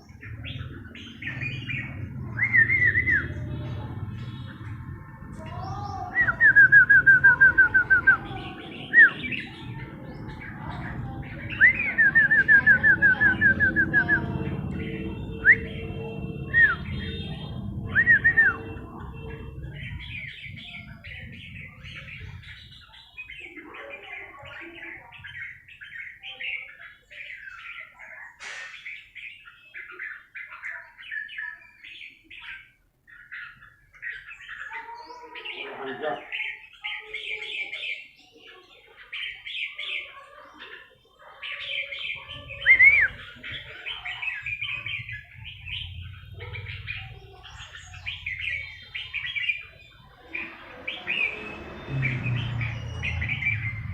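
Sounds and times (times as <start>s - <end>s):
songbirds whistling and chirping: 0.0s - 53.9s
low rumble: 9.5s - 22.4s.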